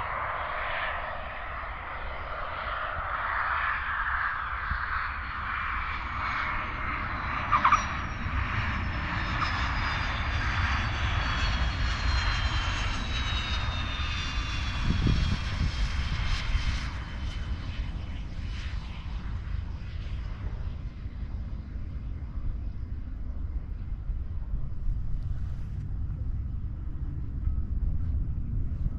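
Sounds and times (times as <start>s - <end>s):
jet engines whining: 0.0s - 28.9s
low rumble: 19.6s - 28.9s.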